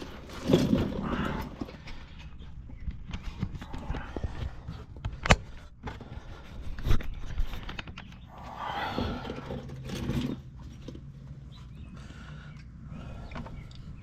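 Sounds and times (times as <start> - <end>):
scraping and rustling: 0.0 - 2.4, 3.1 - 11.4.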